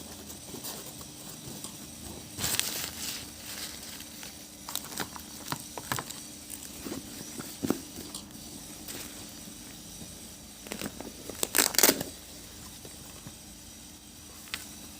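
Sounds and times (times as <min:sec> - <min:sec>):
packaging rustling and crinkling: 0:02.3 - 0:08.2, 0:10.6 - 0:12.2.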